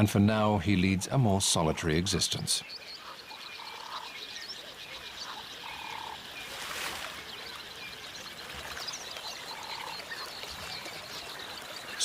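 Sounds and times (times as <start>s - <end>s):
splash: 6.4s - 7.3s.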